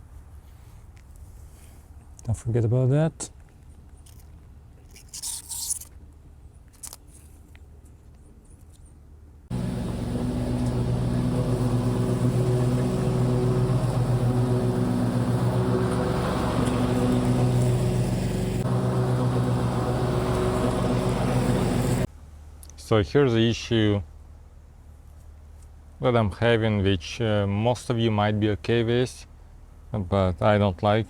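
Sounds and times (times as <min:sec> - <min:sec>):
mower engine running: 0:09.5 - 0:22.1.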